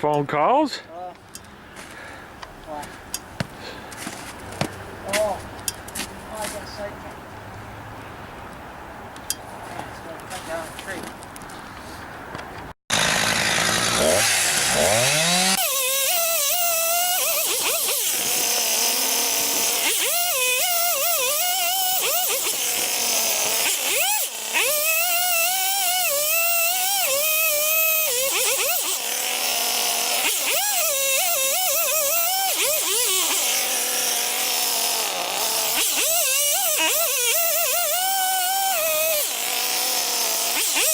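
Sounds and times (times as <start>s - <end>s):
chainsaw cutting a tree: 12.9s - 40.9s.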